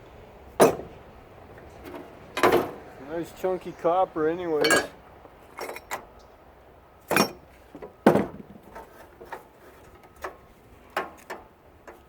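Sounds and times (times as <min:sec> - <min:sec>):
metal parts knocking and clinking: 0:04.6 - 0:05.0, 0:05.6 - 0:06.0, 0:07.1 - 0:07.4.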